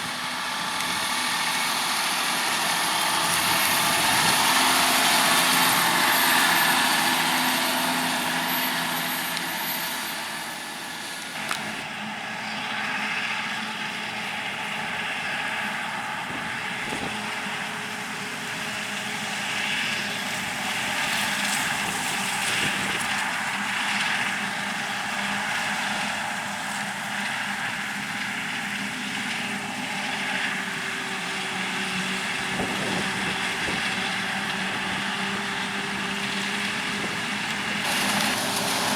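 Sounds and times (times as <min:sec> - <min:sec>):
diesel engines running: 0:00.0 - 0:38.9
thin high whine: 0:03.5 - 0:11.8.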